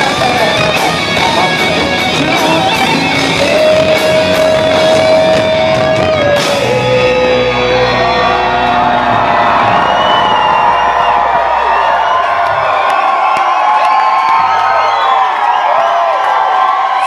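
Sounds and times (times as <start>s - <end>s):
electric guitar lead note: 0.0s - 9.8s
rock band playing live: 0.0s - 12.8s.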